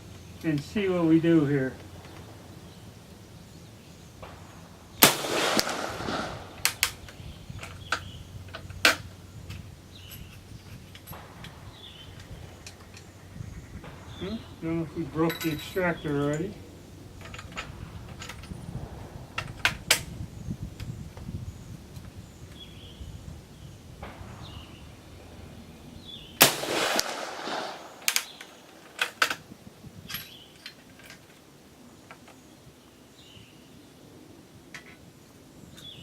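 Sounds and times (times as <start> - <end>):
rifle shot with echo: 4.2 - 7.2, 26.4 - 28.9
sharp metallic clicks: 26.4 - 29.4.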